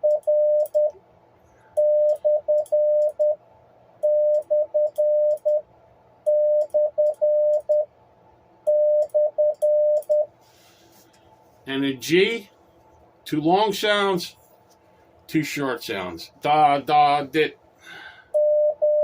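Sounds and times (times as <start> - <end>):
morse code beeping: 0.0 - 0.9, 1.8 - 3.4, 4.0 - 5.6, 6.3 - 7.9, 8.7 - 10.3, 18.4 - 19.0.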